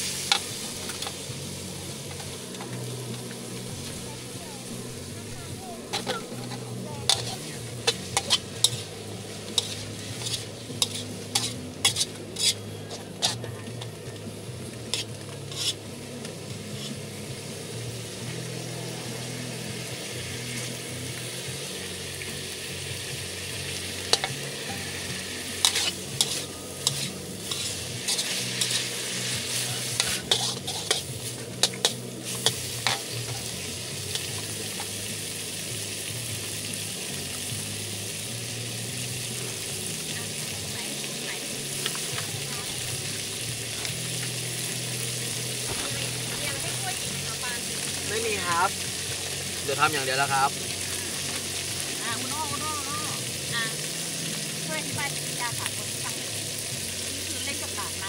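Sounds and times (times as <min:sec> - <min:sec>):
metal spatula scraping a pan: 0:00.0 - 0:01.3, 0:05.8 - 0:13.5, 0:14.9 - 0:15.9, 0:16.7 - 0:17.0, 0:24.0 - 0:35.0
vegetables sizzling in a pan: 0:00.0 - 0:58.0.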